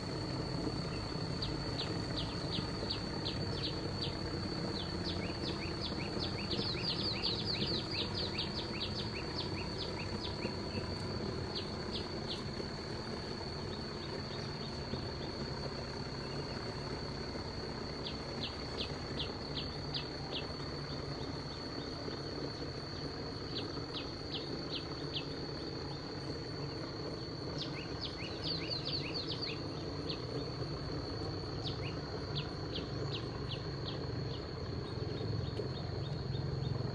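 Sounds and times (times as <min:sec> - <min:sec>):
high insect drone: 0:00.0 - 0:36.9
bird song whistled notes: 0:27.6 - 0:30.2.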